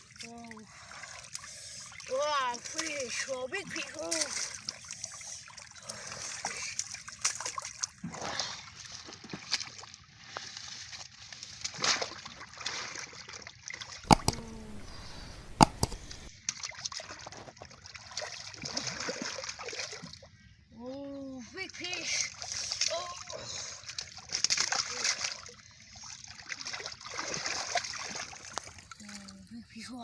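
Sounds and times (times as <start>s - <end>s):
muddy water sloshing: 0.0s - 30.0s
sharp knocks: 14.1s - 16.3s.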